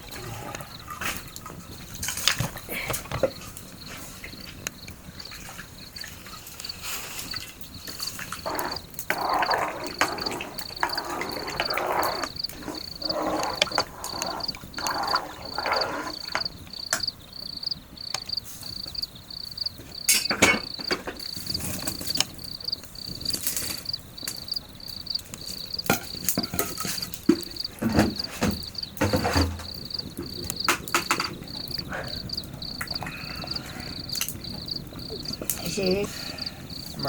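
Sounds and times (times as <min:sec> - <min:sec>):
cricket chirping: 0:00.0 - 0:37.0
knocks and clatters of handling: 0:00.2 - 0:04.8, 0:07.3 - 0:17.1, 0:19.8 - 0:22.4, 0:25.3 - 0:33.6.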